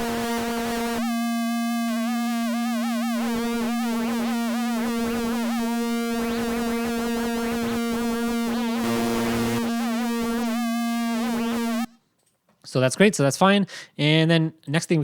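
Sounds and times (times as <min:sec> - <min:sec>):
warbling synthesizer tone: 0:00.0 - 0:11.9.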